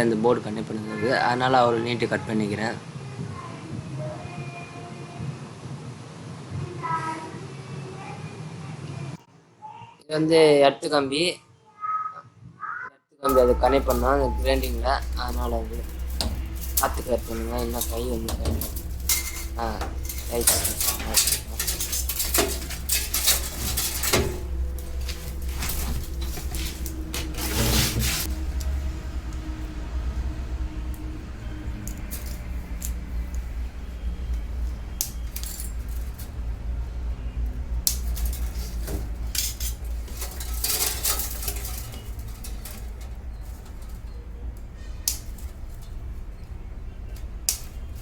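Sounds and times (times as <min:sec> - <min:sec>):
small metal parts clinking: 0:13.3 - 0:28.8, 0:30.8 - 0:48.0
hand tools scraping and clicking: 0:13.3 - 0:29.4, 0:31.8 - 0:48.0
low rumble: 0:13.3 - 0:48.0
steady low hum: 0:13.3 - 0:48.0.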